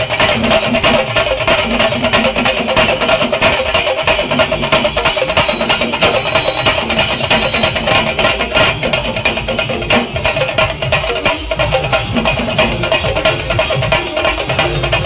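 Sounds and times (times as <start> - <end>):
drum ensemble playing fast beat: 0.0 - 15.0.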